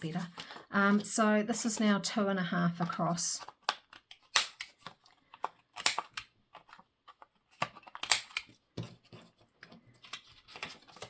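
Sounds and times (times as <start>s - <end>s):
paper rustling: 3.5s - 11.0s.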